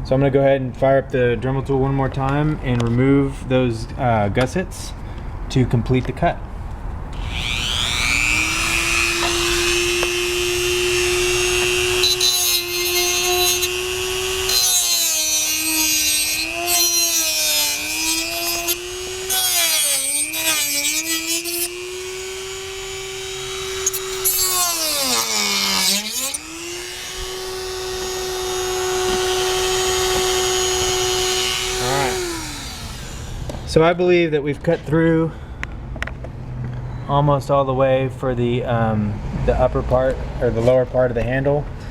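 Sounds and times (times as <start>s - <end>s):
rotary tool cutting plastic: 7.1s - 33.7s.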